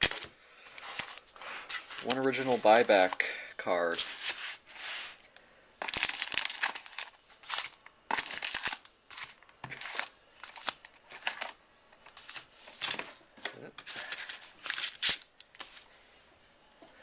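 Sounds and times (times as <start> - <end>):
card packaging crinkling: 0.0 - 5.0, 5.8 - 13.2, 13.8 - 15.8.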